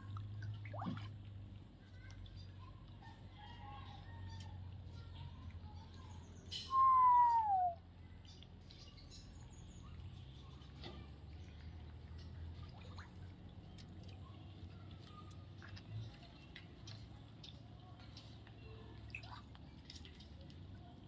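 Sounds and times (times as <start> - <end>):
faint background noise: 0.0 - 21.0
bird whistle falling in pitch: 6.6 - 7.8.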